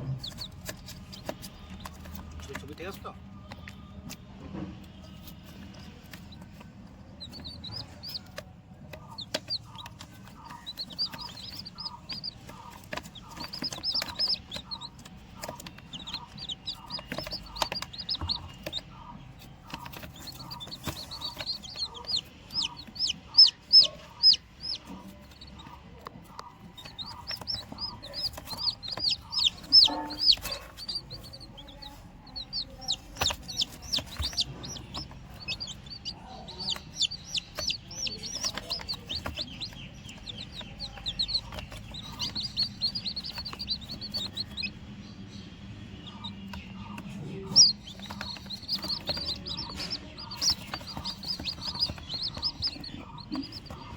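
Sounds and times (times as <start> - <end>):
baby chicks peeping: 0.0 - 53.9.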